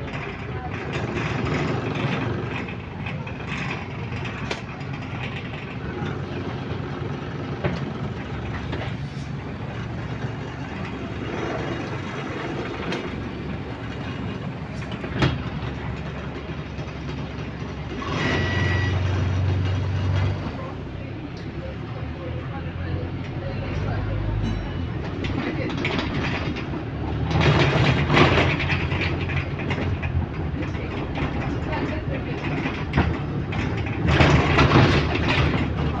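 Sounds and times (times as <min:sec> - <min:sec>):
deep drone: 0:00.0 - 0:25.5
bus engine and road rumble: 0:00.0 - 0:36.0
sharp rattles and knocks: 0:00.1 - 0:18.2, 0:25.0 - 0:36.0
brief high beep: 0:18.0 - 0:19.1.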